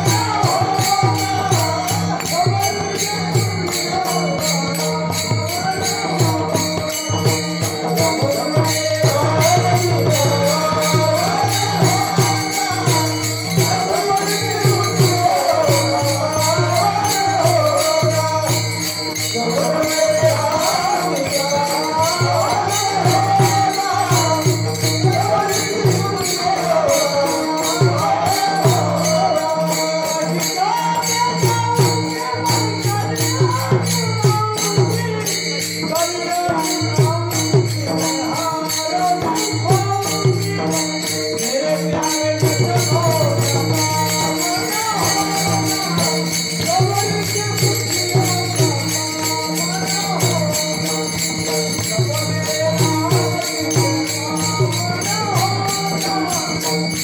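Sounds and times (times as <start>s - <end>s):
jingling hand cymbals: 0.0s - 57.0s
steady repeating drum beat: 0.0s - 57.0s
wavering devotional melody: 0.0s - 57.0s.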